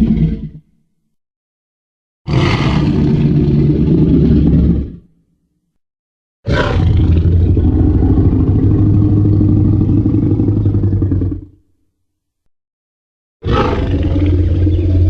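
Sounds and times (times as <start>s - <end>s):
dinosaur roar: 2.3s - 5.1s, 6.5s - 11.6s, 13.4s - 15.0s.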